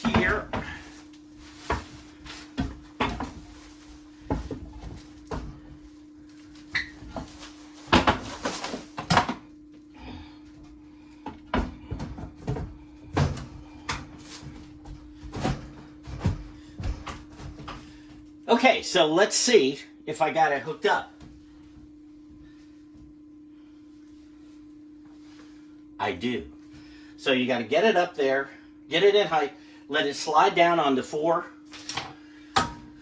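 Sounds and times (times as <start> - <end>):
microwave knocking and clunking: 0.0 - 0.8, 2.5 - 3.5, 32.6 - 33.0
steady low hum: 0.0 - 33.0.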